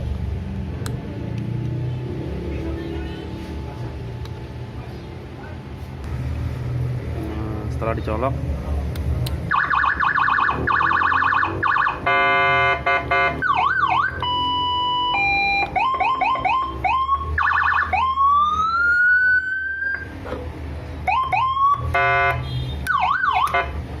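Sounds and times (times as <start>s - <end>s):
electronic siren cycling tones: 9.5s - 20.2s, 21.1s - 22.3s, 22.9s - 23.6s.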